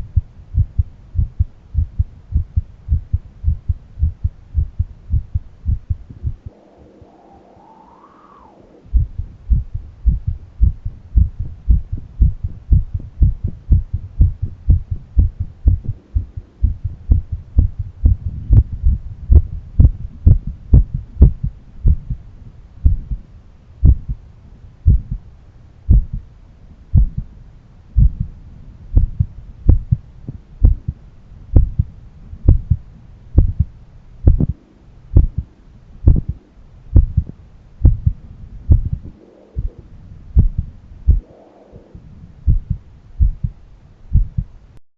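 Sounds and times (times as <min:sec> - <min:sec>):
heartbeat through a stethoscope: 0:00.0 - 0:06.5, 0:08.9 - 0:23.2, 0:23.8 - 0:24.2, 0:24.8 - 0:25.2, 0:25.9 - 0:26.3, 0:26.9 - 0:27.3, 0:28.0 - 0:41.4, 0:42.4 - 0:44.6.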